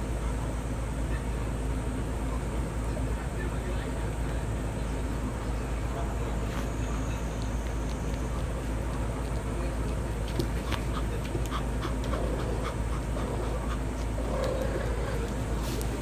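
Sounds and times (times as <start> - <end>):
dog panting: 7.3 - 16.0.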